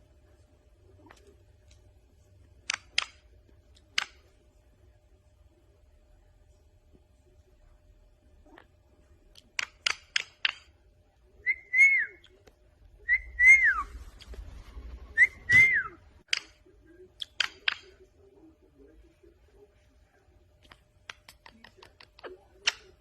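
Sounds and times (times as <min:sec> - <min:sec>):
sharp clicks: 0:02.6 - 0:04.2, 0:09.4 - 0:10.7, 0:17.2 - 0:18.0
whistled phrases: 0:11.4 - 0:12.4, 0:13.0 - 0:14.0, 0:15.1 - 0:16.1.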